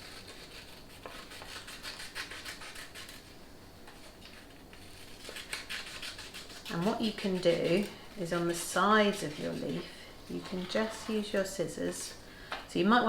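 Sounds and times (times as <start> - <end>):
scissors snipping paper: 0.0 - 3.2, 3.9 - 9.8
paper rustling: 3.8 - 11.5.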